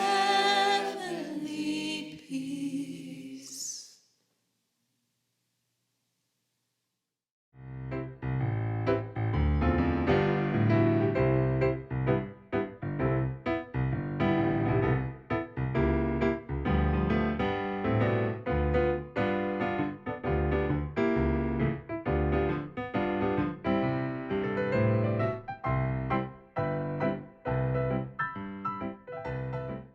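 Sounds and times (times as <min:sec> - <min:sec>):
piano music: 0:07.6 - 0:29.9.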